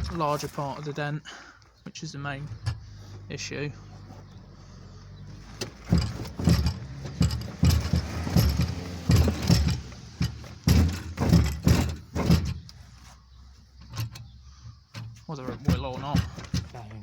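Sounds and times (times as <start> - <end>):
metallic clunks of roller: 0.0 - 1.0, 2.4 - 3.3, 5.3 - 13.0, 13.8 - 17.0.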